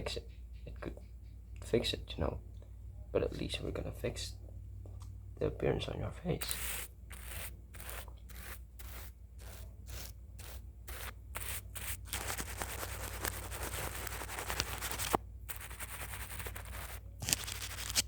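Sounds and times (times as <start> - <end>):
drawing tool scratching: 6.4 - 18.0.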